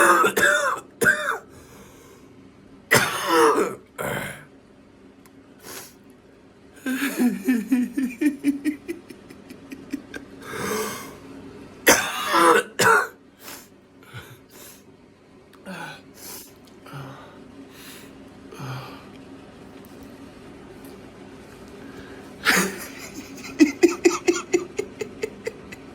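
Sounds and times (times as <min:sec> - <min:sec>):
person clearing throat: 0:00.0 - 0:01.5, 0:02.9 - 0:04.5, 0:11.9 - 0:13.2, 0:22.4 - 0:25.5
person coughing: 0:00.0 - 0:01.5, 0:02.9 - 0:04.4, 0:11.9 - 0:13.2, 0:22.4 - 0:25.6.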